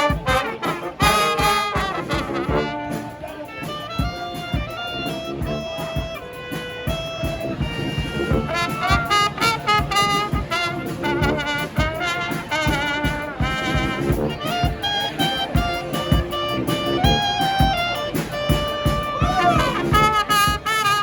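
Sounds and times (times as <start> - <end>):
brass band playing: 0.0 - 21.0
percussion beat: 0.0 - 21.0.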